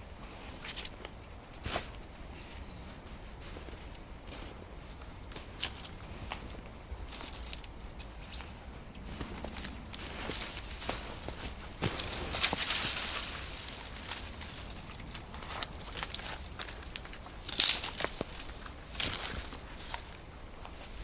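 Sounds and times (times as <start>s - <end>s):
skis crunching over snow: 8.3s - 21.0s.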